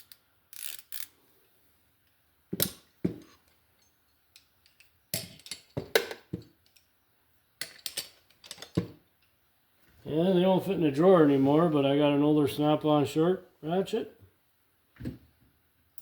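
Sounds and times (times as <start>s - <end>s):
metal tools clacking: 7.6s - 8.8s.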